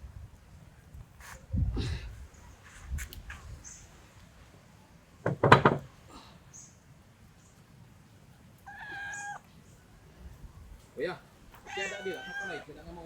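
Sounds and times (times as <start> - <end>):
puppy whining: 8.7 - 9.4, 11.6 - 12.7.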